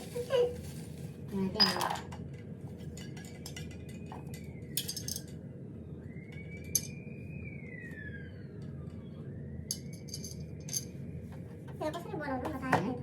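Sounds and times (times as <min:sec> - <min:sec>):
steady low hum: 0:00.0 - 0:13.0
metal cookware clinking: 0:09.7 - 0:10.9.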